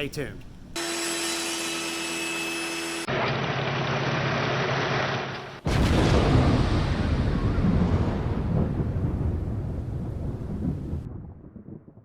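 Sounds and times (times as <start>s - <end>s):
power tool motor whine: 0.8s - 5.3s
rushing rumble: 5.6s - 11.8s.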